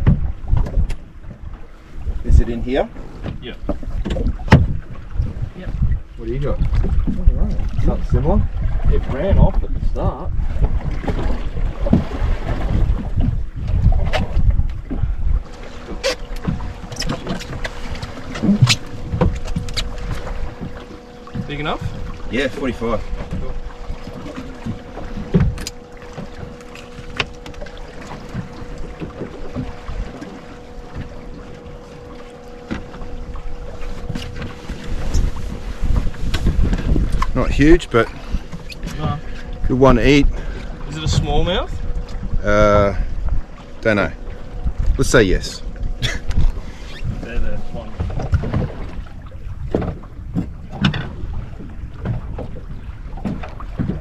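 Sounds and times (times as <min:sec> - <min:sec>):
knocks and bumps on boat: 0:00.0 - 0:54.0
water noise: 0:00.0 - 0:54.0
wind: 0:00.0 - 0:54.0.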